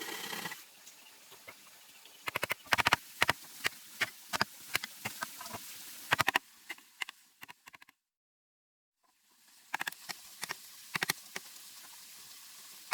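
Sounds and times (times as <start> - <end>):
sharp irregular clicks and knocks: 2.2 - 8.0, 9.7 - 11.5.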